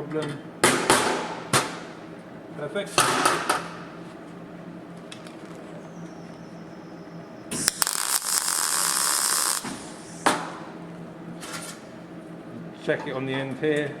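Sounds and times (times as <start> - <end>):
welder arc crackling: 7.5 - 10.6.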